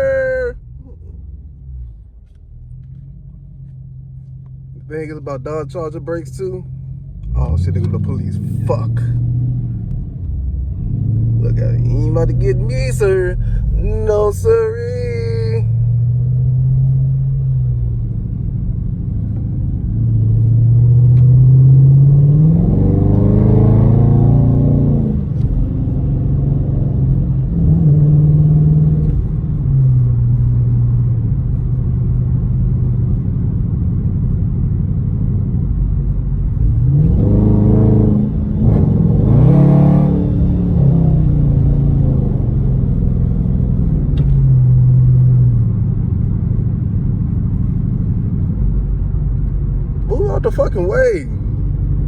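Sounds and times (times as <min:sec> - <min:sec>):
car engine accelerating: 0:00.0 - 0:52.0.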